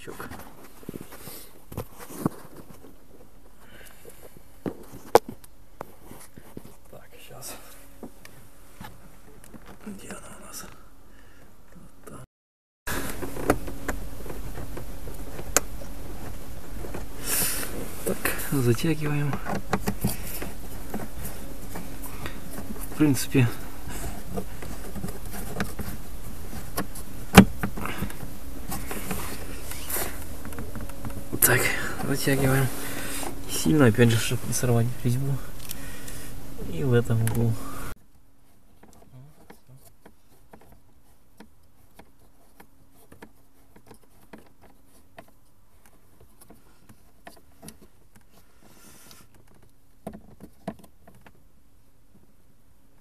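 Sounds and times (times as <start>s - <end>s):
steady hum: 12.9s - 53.0s.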